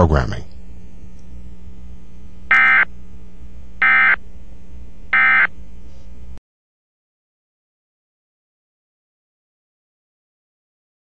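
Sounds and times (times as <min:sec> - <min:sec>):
low steady hum: 0:00.0 - 0:06.4
buzzing digital data tones: 0:02.5 - 0:02.9, 0:03.8 - 0:04.2, 0:05.1 - 0:05.5.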